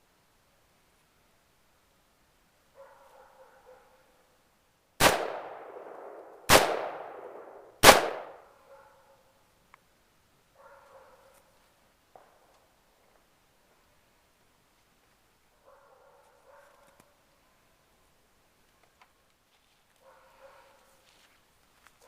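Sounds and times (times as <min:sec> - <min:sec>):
rifle shots echoing: 0:05.0 - 0:08.5.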